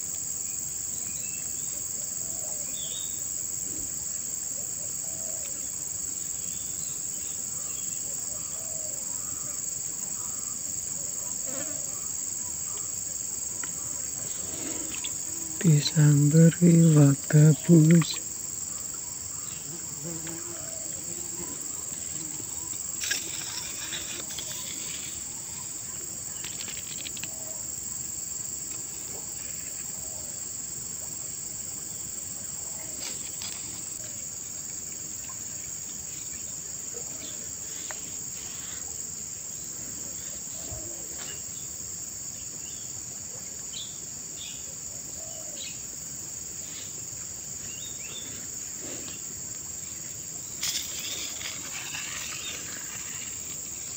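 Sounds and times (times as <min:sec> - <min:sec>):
insects trilling: 0:00.0 - 0:53.9
rustling: 0:22.0 - 0:27.4, 0:50.6 - 0:53.9.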